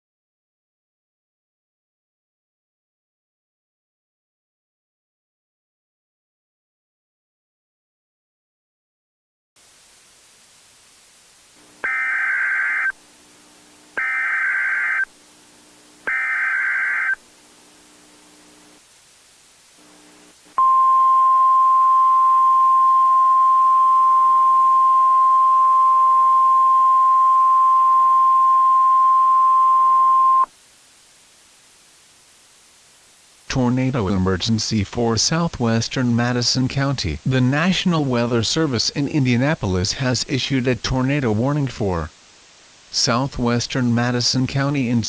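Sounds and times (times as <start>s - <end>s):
digital data tone bursts: 11.8s - 13.0s, 14.0s - 15.1s, 16.0s - 17.2s
steady single-pitch alert tone: 11.8s - 13.0s, 16.0s - 17.2s.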